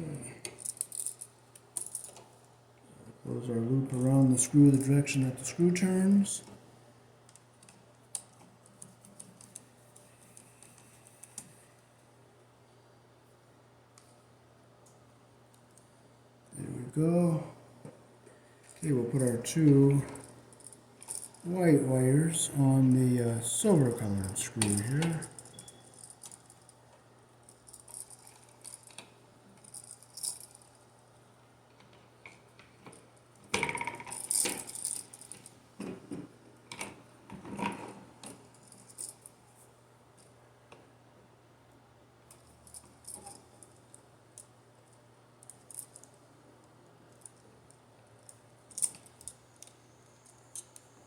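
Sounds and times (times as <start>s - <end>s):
metal tools and wire rattling: 23.6s - 26.4s.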